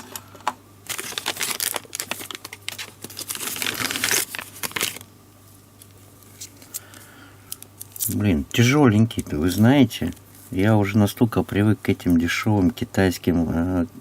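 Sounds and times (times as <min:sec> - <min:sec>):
packaging crinkling and tearing: 0:00.0 - 0:05.1.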